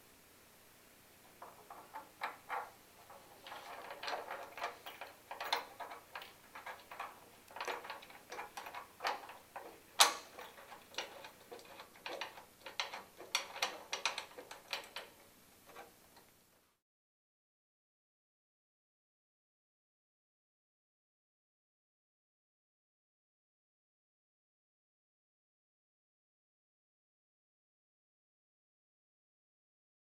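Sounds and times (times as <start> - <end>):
metal hardware clicking and tapping: 1.4 - 15.9.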